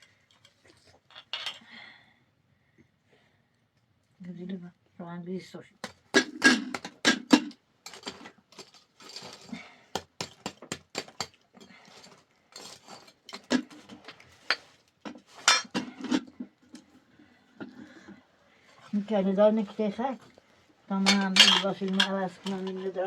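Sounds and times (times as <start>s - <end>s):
dishes and utensils clinking: 12.6s - 16.3s, 21.0s - 23.0s.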